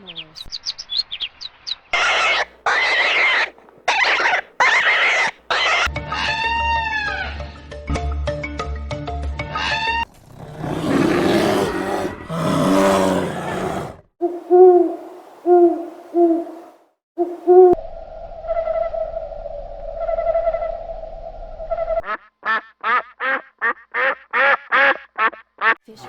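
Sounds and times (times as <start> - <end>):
rapid short animal calls: 2.0 - 5.9
animal hooting: 2.0 - 7.4, 9.6 - 17.8
harsh animal call: 2.0 - 7.5, 9.6 - 17.8.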